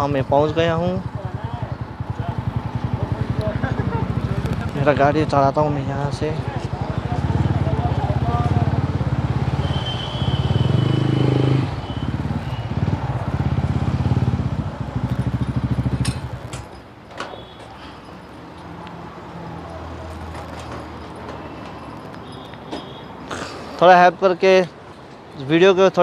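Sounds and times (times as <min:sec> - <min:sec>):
motorcycle engine running: 0:00.0 - 0:17.0
light clicks and rattles: 0:15.0 - 0:19.0.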